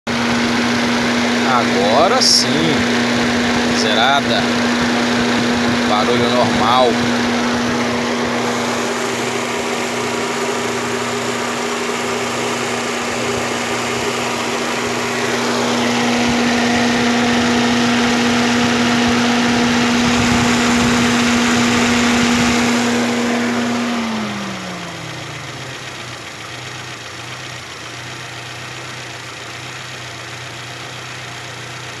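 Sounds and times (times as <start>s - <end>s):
car engine idling: 0.0s - 32.0s
radiator cooling fan humming: 0.1s - 25.2s.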